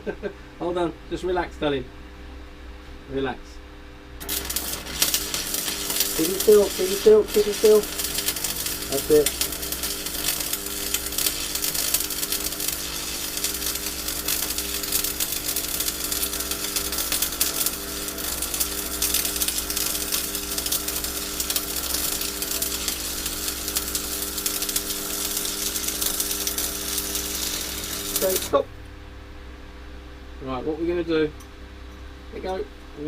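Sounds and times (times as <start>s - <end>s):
steady hum: 0.0s - 33.0s
welding arc crackling: 4.2s - 28.7s.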